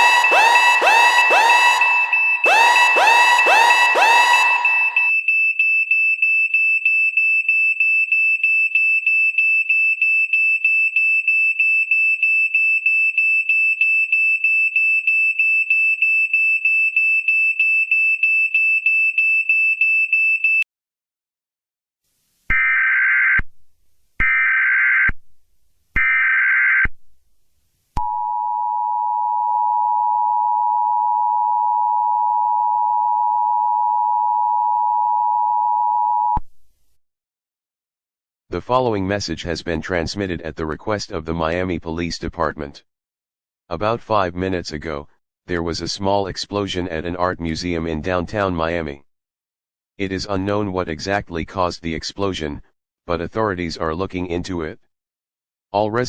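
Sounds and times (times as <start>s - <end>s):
rapidly pulsing alert beep: 0.0s - 5.1s
steady two-tone attention signal: 0.0s - 5.1s.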